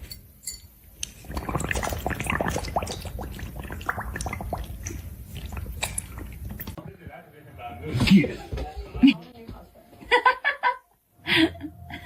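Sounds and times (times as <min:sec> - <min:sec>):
small splashes and drips: 0:01.0 - 0:06.8.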